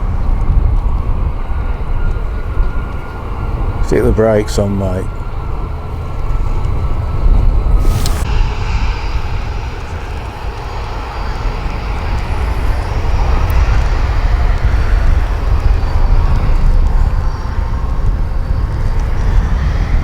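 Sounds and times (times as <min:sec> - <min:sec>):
jet engines rumbling: 0:01.1 - 0:20.0.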